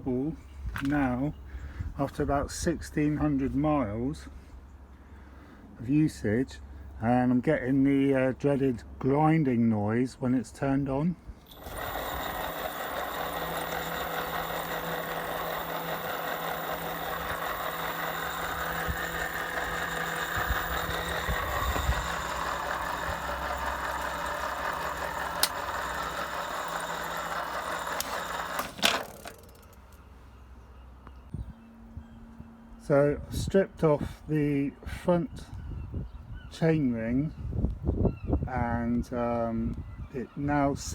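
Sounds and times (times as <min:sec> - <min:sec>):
e-bike motor grinding rumble: 0:11.5 - 0:30.0
motor cutting out click: 0:11.5 - 0:30.0.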